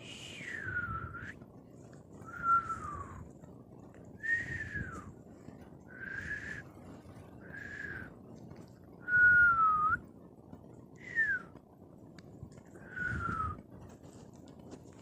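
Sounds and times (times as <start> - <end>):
person whistling softly: 0.0 - 1.4, 2.2 - 3.2, 4.2 - 5.1, 5.9 - 6.7, 7.4 - 8.1, 9.0 - 10.0, 11.0 - 11.5, 12.8 - 13.6.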